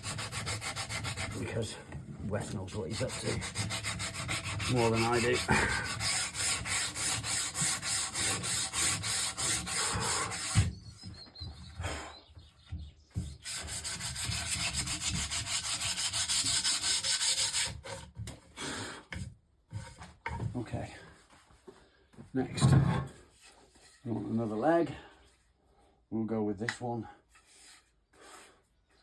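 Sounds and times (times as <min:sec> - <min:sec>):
sandpaper rubbing on wood: 0:00.0 - 0:01.8, 0:02.4 - 0:10.7, 0:13.2 - 0:18.0.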